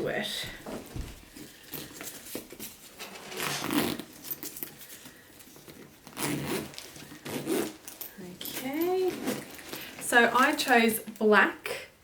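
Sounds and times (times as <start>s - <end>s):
leather handbag rustling and rubbing: 0.8s - 10.7s
leather stretching: 1.3s - 8.0s.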